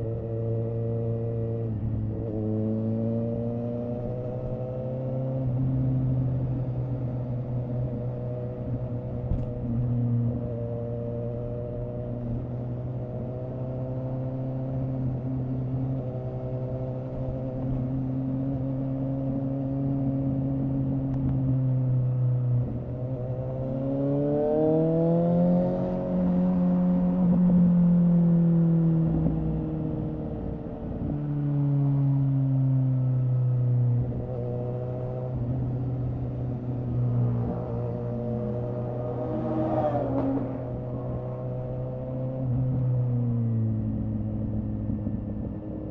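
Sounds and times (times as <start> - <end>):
motorcycle engine revving: 22.9 - 31.1, 33.9 - 44.6.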